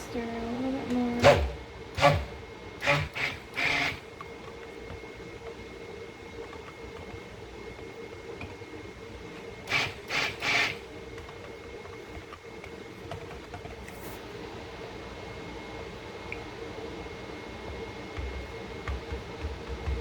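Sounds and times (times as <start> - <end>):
faint hum: 0.0 - 20.0.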